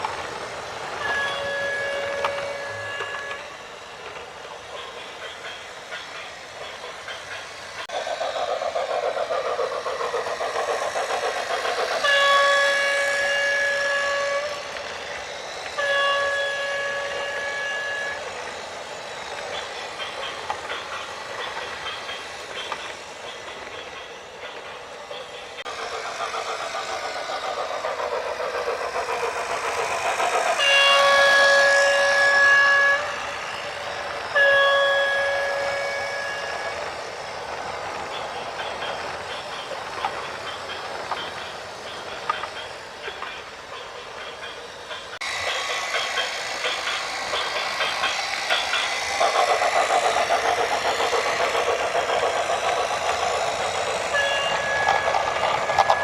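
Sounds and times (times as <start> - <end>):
horn blasts: 1.0 - 3.4, 12.0 - 14.6, 15.8 - 18.2, 30.6 - 33.2, 34.3 - 36.6.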